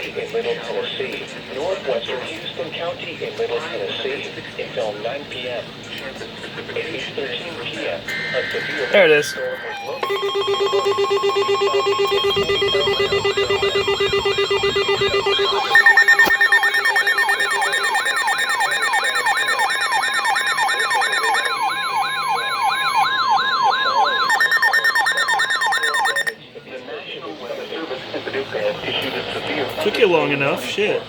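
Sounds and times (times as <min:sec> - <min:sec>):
pulsing beep: 0:08.1 - 0:26.4
steady warning tone: 0:08.1 - 0:26.4
warbling siren-like alarm: 0:08.1 - 0:26.4.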